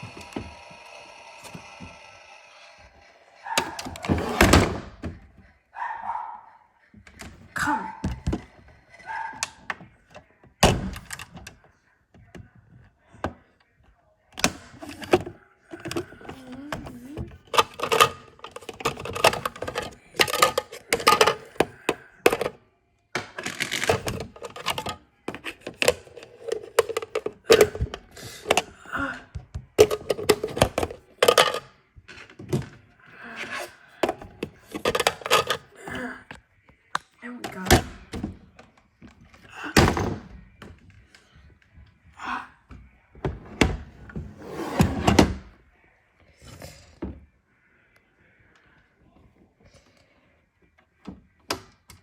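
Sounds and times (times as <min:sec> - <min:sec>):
hard objects clicking and knocking: 0:14.4 - 0:41.2.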